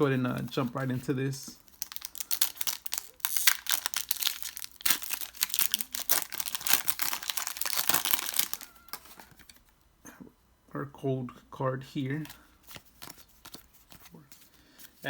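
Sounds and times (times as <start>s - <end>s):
foil wrapper crinkling and tearing: 1.6s - 9.6s.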